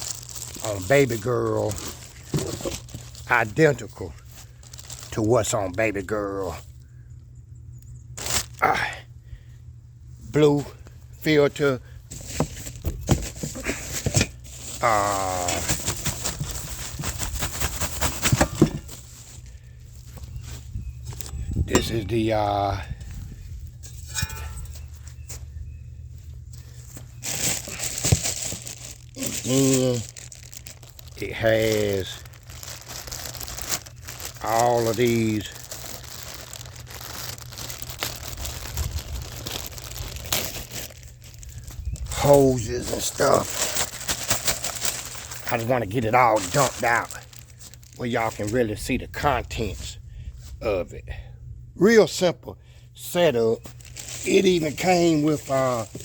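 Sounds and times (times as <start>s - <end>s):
parts and packaging clicking: 0.0s - 3.3s, 12.1s - 20.3s, 26.6s - 48.6s.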